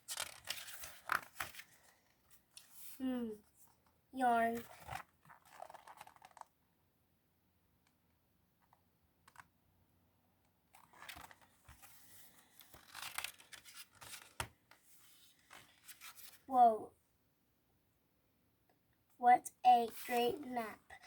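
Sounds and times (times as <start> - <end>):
paper pages rustling and crinkling: 0.0 - 3.0, 4.5 - 6.6, 9.3 - 9.5, 10.7 - 16.5, 19.8 - 21.0.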